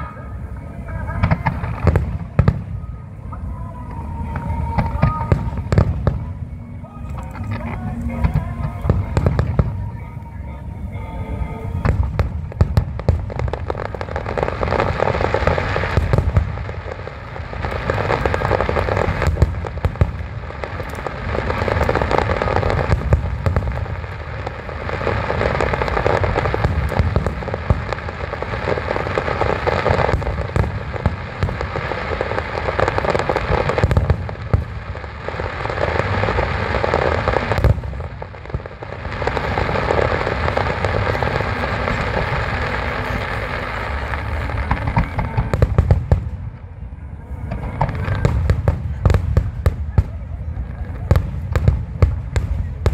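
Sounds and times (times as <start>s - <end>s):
fireworks booming bursts: 0.0s - 10.3s, 11.0s - 52.9s
fireworks crackling: 0.0s - 52.9s.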